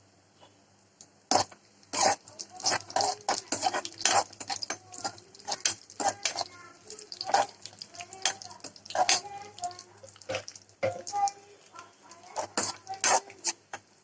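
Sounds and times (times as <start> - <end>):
metal spoon knocking in a pan: 7.2 - 9.4.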